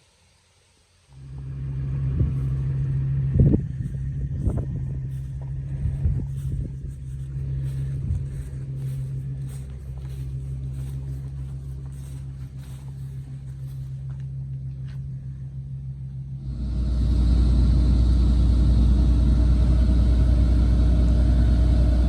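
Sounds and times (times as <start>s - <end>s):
farm machine engine running: 1.1s - 22.0s.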